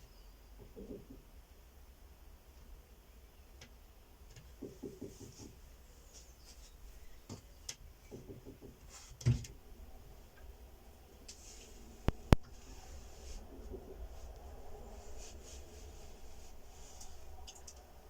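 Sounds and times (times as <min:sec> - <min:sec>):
faint clicks: 0:17.0 - 0:17.9.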